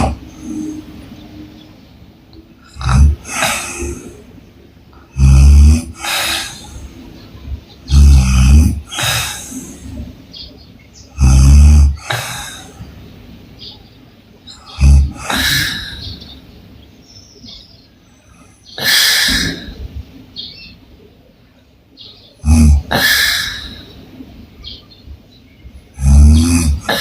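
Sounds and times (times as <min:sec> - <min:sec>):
airy breathing: 0:00.0 - 0:01.3, 0:02.6 - 0:13.1, 0:14.5 - 0:16.4, 0:18.0 - 0:20.0, 0:22.4 - 0:24.8, 0:26.0 - 0:27.0
woman snoring: 0:07.9 - 0:09.6, 0:11.2 - 0:12.7, 0:26.0 - 0:27.0.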